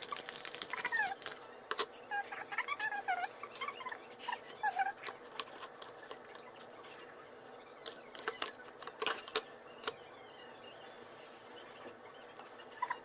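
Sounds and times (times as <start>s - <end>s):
slime squeaks: 0.0s - 13.0s.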